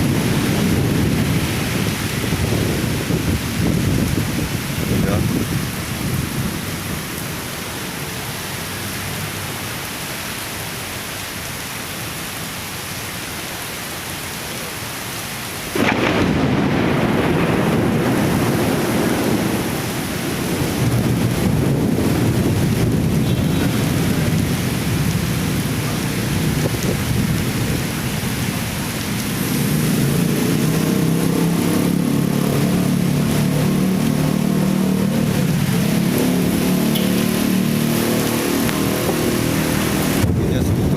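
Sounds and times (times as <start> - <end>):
thunder rumble: 0.0 - 7.3, 15.7 - 40.9
strong wind: 0.0 - 8.2, 15.7 - 36.9, 37.5 - 40.9
heavy rain pouring: 0.0 - 40.9.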